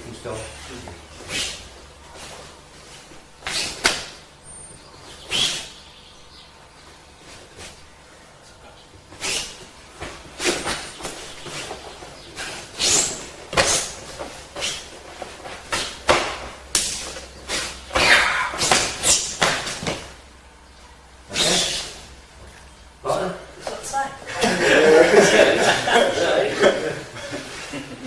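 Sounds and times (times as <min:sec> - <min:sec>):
slaps and thuds of arms: 0:03.4 - 0:04.2, 0:09.1 - 0:20.2.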